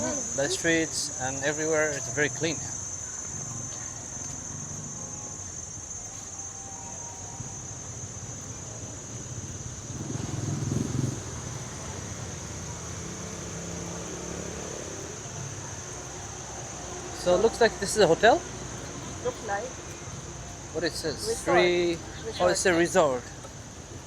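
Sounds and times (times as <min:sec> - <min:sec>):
insects droning in trees: 0:00.0 - 0:24.0
low street rumble: 0:00.0 - 0:24.0
vehicle passing: 0:08.8 - 0:23.4.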